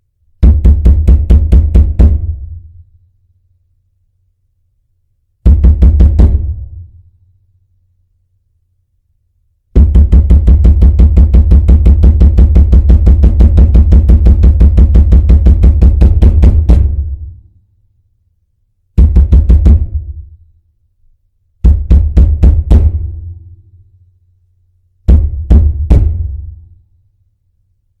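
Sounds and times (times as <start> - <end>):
pounding on a door: 0.4 - 2.4, 5.5 - 6.7, 9.8 - 17.2, 19.0 - 20.2, 21.6 - 23.2, 25.1 - 26.6.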